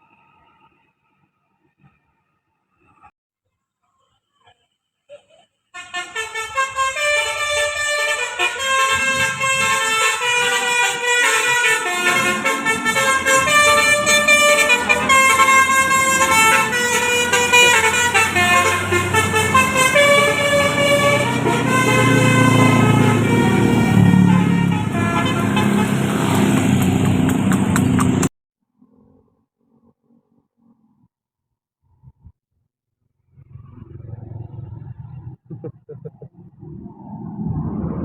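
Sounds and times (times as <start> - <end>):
bus engine rumble: 5.8 - 28.3, 33.6 - 38.0
bus multi-tone horn melody: 5.8 - 28.3.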